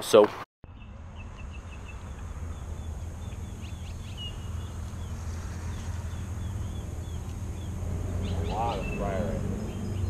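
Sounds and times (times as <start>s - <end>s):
low rumble: 0.7s - 10.0s
small birds chirping: 0.7s - 10.0s.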